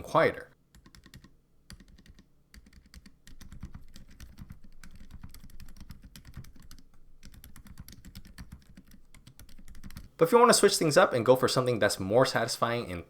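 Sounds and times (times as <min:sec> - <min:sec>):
fast typing on keyboard: 0:00.7 - 0:10.2.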